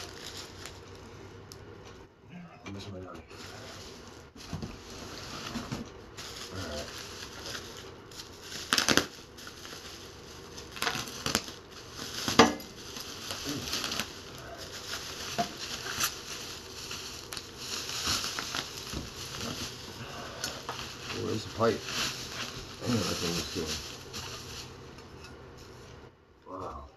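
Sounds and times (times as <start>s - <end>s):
packaging crinkling and rustling: 0.0s - 1.0s, 3.3s - 25.0s
sharp packaging crunches: 6.2s - 24.6s.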